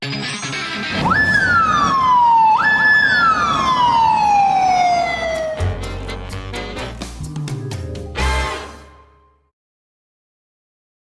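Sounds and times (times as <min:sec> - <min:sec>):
motorcycle siren wailing: 0:00.9 - 0:06.2.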